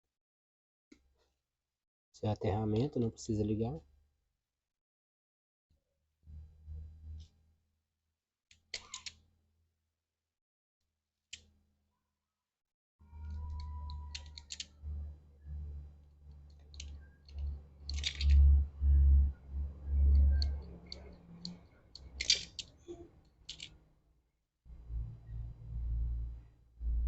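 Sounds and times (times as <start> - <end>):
hands handling wires: 16.5 - 18.5, 20.2 - 23.8.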